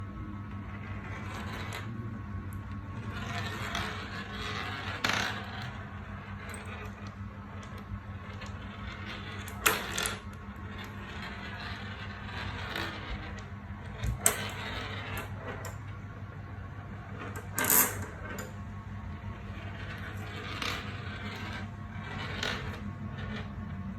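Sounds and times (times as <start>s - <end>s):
marbles rolling on toy track: 3.0s - 15.8s, 17.2s - 18.5s, 19.4s - 23.5s.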